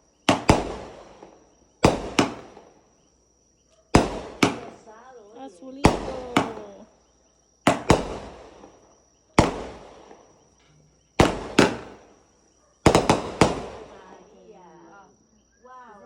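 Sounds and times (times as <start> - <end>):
fireworks banging: 0.0 - 2.8, 3.9 - 5.1, 5.8 - 6.9, 7.6 - 14.3.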